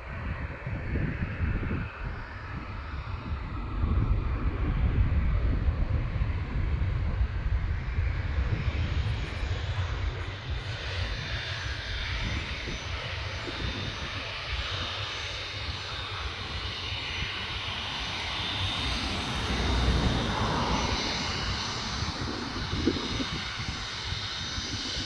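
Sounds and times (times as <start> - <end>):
high engine whine: 0.0 - 25.0
jet engines rumbling: 0.0 - 25.0.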